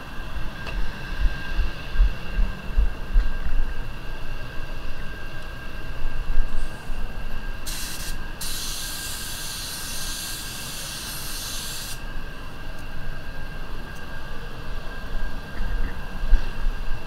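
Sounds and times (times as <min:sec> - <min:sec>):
ventilation hum: 0:00.0 - 0:17.0
spray gun air hiss: 0:07.6 - 0:12.0.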